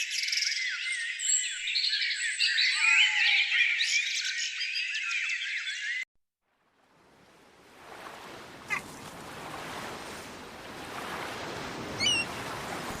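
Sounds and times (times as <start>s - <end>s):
birds chirping: 11.9s - 12.4s.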